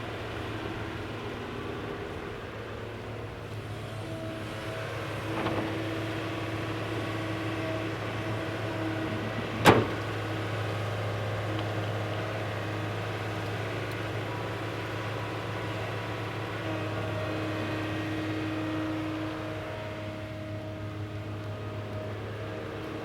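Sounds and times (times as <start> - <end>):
excavator motor humming: 0.2 - 23.0.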